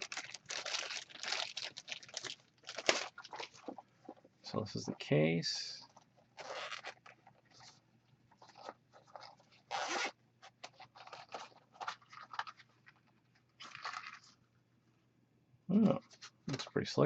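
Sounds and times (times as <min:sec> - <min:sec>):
zipper being pulled open: 0:06.4 - 0:07.0, 0:09.7 - 0:10.2.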